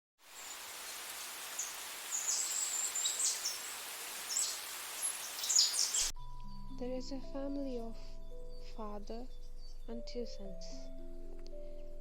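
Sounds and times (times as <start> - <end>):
steady hiss: 0.2 - 6.1
small birds chirping: 0.3 - 6.1.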